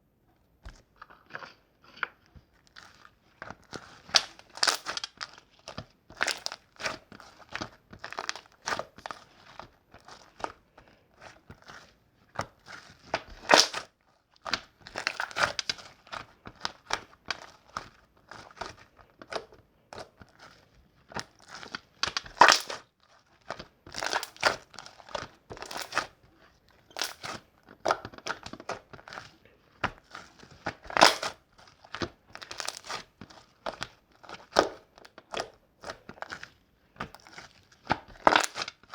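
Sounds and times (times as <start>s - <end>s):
slime squished crackling pops: 22.0s - 22.8s, 30.8s - 31.4s.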